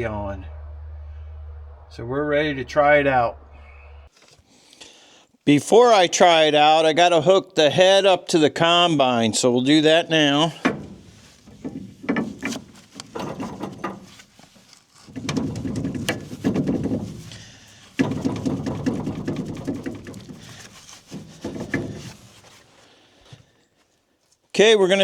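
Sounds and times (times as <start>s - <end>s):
metal clanking and rattling: 10.6s - 22.4s.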